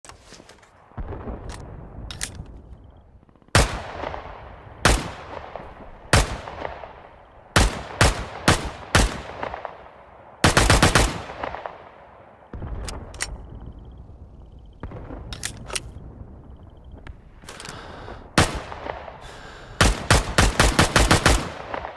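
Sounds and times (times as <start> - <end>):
submachine gun firing: 3.5 - 6.9, 7.6 - 9.8, 10.4 - 11.8, 19.8 - 21.9.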